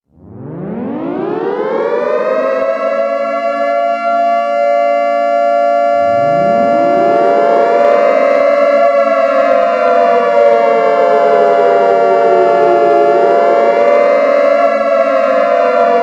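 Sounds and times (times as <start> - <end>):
air-raid siren wailing: 0.2 - 16.0
second siren winding up: 5.8 - 13.5.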